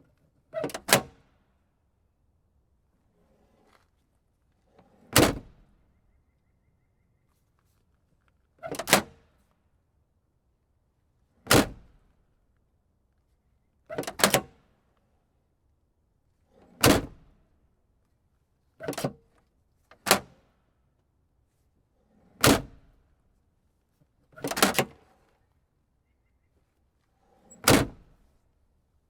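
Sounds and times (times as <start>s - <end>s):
rustle and latch click: 8.2s - 9.1s, 13.9s - 14.5s, 18.8s - 20.4s, 24.3s - 25.4s
car trunk lid slamming: 27.6s - 28.1s.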